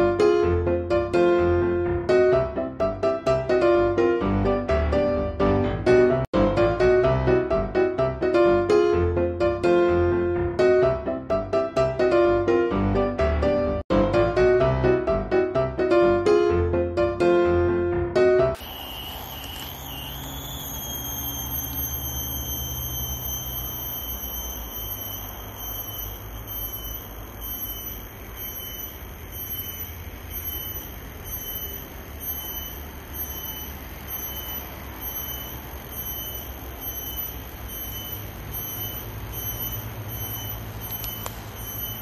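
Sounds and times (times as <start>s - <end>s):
high-pitched whine: 18.6s - 42.0s
low rumble of road traffic: 18.6s - 42.0s.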